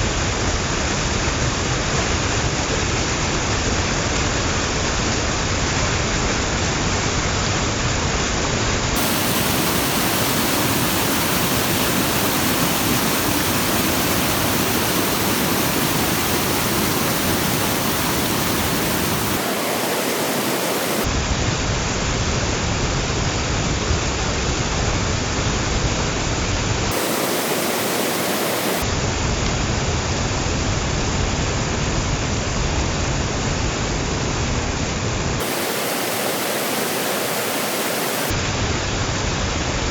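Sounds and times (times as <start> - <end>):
waterfall pouring and splashing: 9.0 - 21.2, 26.9 - 28.9, 35.4 - 39.6.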